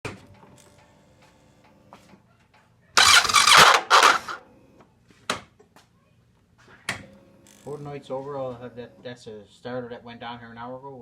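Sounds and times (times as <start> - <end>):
starter motor cranking engine: 3.0 - 4.4.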